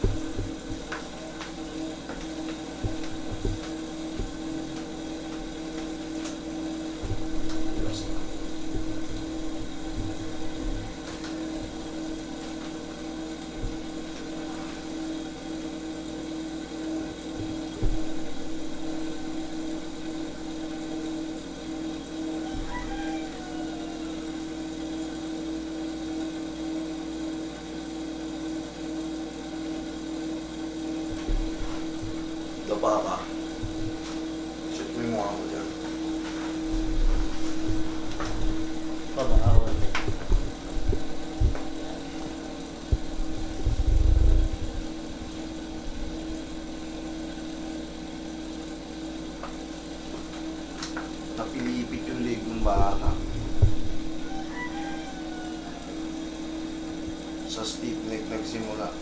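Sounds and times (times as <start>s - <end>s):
steady mechanical hum: 0.0s - 59.0s
low rumbling: 42.8s - 47.0s, 52.6s - 54.2s.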